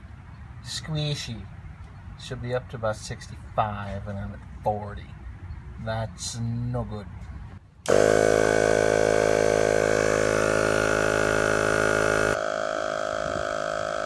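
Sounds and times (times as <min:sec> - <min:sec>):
air compressor buzzing drone: 0:07.8 - 0:14.0
air hissing: 0:07.9 - 0:14.0.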